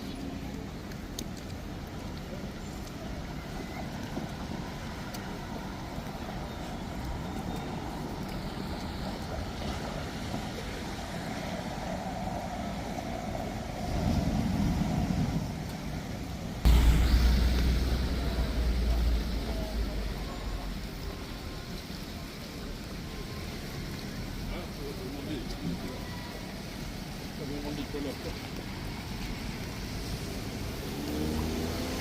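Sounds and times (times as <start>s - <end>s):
vehicles passing: 0.0s - 32.0s
loud low rumble: 16.6s - 21.4s.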